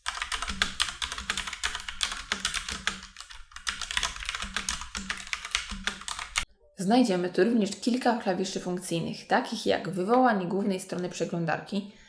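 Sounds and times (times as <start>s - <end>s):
mechanical keyboard typing: 0.0s - 6.5s.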